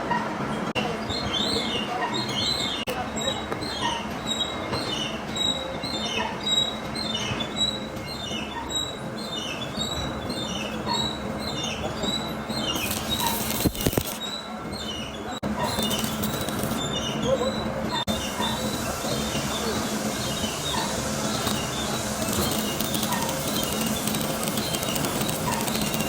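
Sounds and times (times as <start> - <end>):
rhythmic squeak: 0.0 - 26.0
metalworking machinery running: 0.3 - 26.0.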